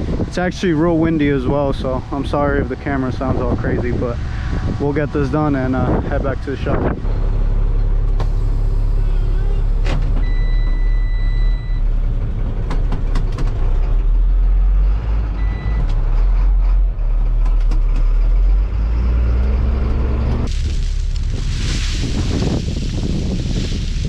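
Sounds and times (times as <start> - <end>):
wind buffeting microphone: 0.0 - 7.1, 20.4 - 24.0
truck engine running: 0.0 - 24.0.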